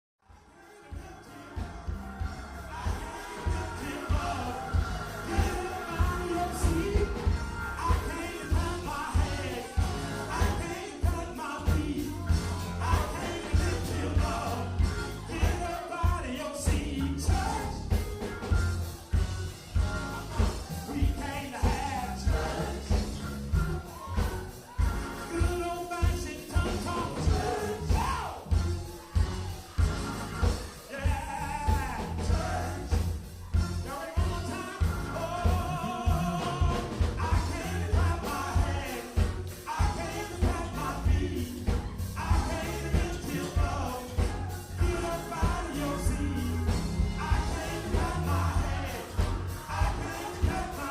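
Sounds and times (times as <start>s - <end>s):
person singing: 0.5s - 18.0s, 20.0s - 23.3s, 33.8s - 50.9s
drum and bass beat: 0.8s - 50.9s.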